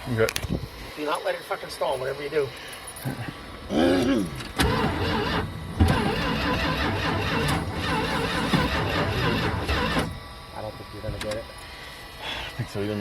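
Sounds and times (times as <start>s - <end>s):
engine cranking without starting: 4.3s - 10.3s.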